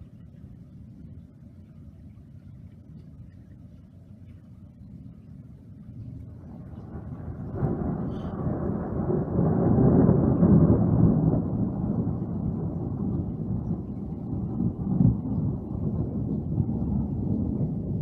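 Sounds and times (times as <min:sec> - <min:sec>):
thunder rumbling: 0:06.0 - 0:18.0.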